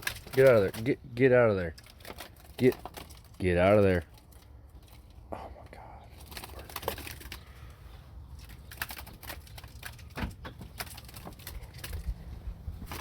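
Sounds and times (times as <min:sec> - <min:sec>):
bird tapping and rustling in truck cab: 0:06.2 - 0:13.0.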